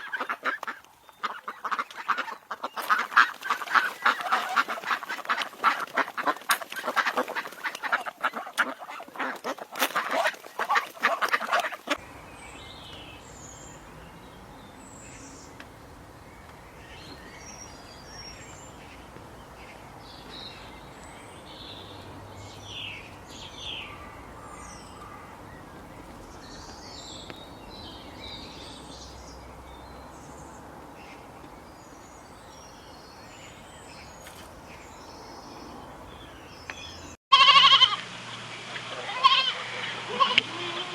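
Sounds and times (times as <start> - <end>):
waterfowl quacking and honking: 0.0 - 12.0
steady outdoor hiss: 0.0 - 40.9.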